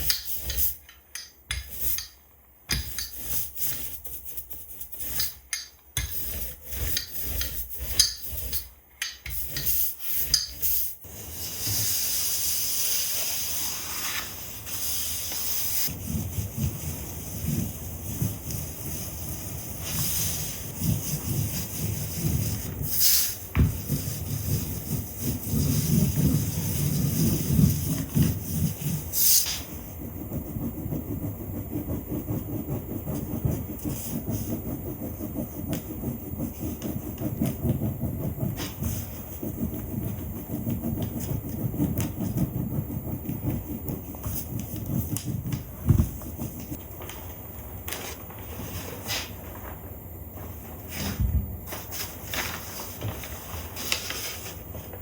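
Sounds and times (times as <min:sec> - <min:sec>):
gritty rolling and rubbing: 0:23.6 - 0:46.8.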